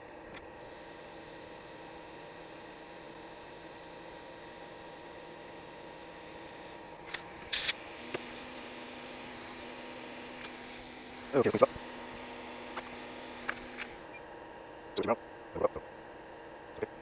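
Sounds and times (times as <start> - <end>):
electrical hum with high whine: 0.0 - 17.0
loud burst of noise: 7.5 - 7.8.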